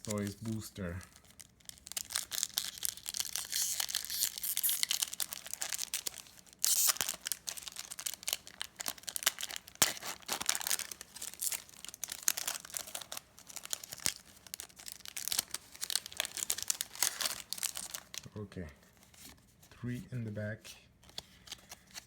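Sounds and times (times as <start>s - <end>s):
foil wrapper crinkling and tearing: 0.0s - 18.3s.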